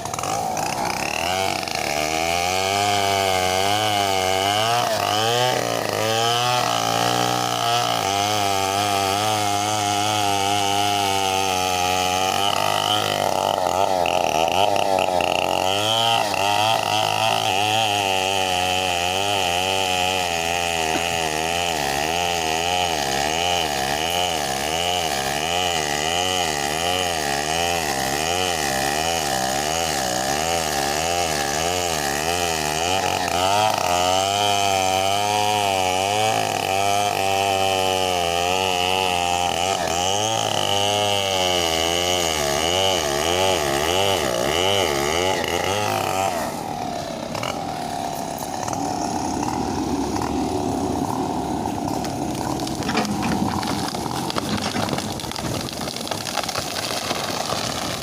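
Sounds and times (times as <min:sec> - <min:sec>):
engine running: 0:46.4 - 0:56.4.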